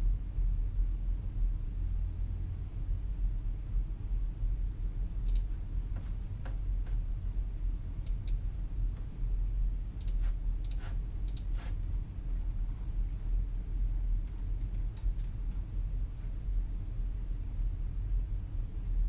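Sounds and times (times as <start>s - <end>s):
steady low hum: 0.0s - 19.0s
keyboard and mouse clicks: 5.2s - 7.0s, 8.0s - 8.4s, 10.0s - 11.8s.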